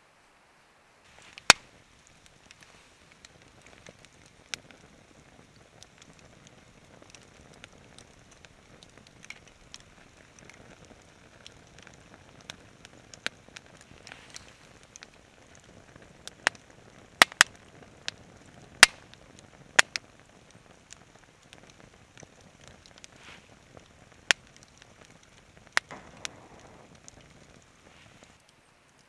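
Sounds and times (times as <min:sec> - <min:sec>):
fire crackling and popping: 0:01.0 - 0:29.0.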